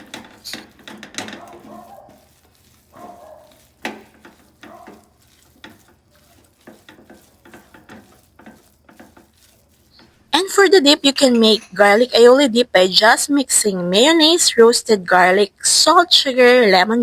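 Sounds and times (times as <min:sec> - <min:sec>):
utensil scraping a pan: 0:00.0 - 0:12.6.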